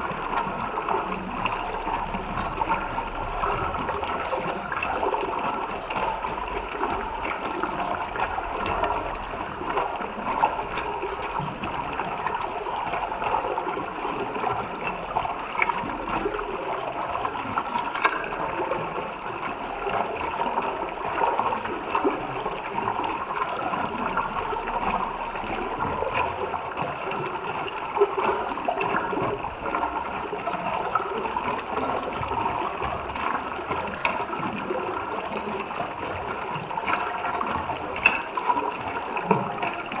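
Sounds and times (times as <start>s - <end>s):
small water splashes: 0.0s - 40.0s
water bubbling and gurgling: 0.0s - 40.0s.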